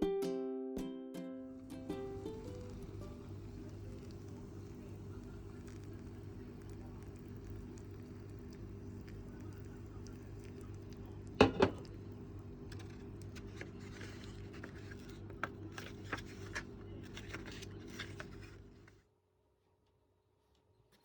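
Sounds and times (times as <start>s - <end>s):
kitchen appliance electrical hum: 1.5s - 19.0s
clicks and rustling of handling: 12.7s - 19.0s.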